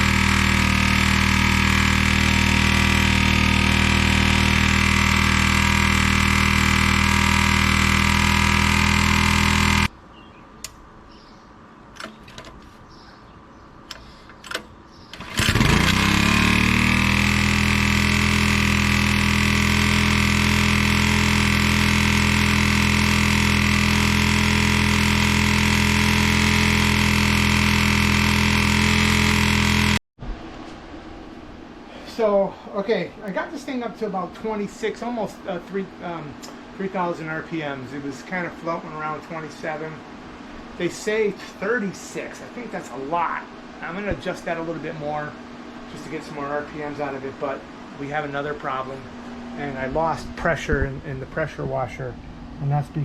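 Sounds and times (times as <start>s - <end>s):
small engine running: 0.0s - 9.9s, 15.2s - 30.0s.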